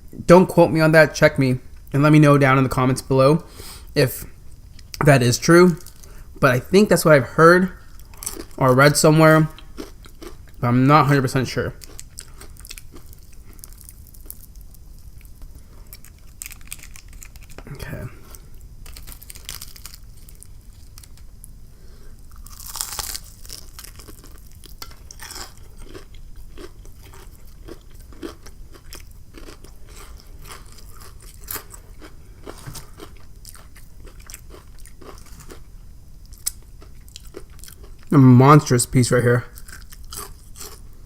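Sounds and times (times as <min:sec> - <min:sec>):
chewing crispy chicken: 0:07.9 - 0:10.6, 0:11.8 - 0:21.3, 0:22.2 - 0:38.2, 0:39.5 - 0:41.0.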